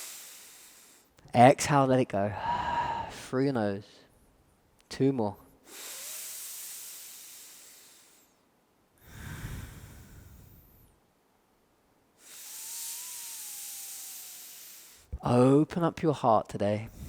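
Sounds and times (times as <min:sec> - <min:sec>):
deep breaths through nose: 0:00.0 - 0:01.2, 0:05.6 - 0:08.4, 0:09.0 - 0:11.0, 0:12.2 - 0:15.1.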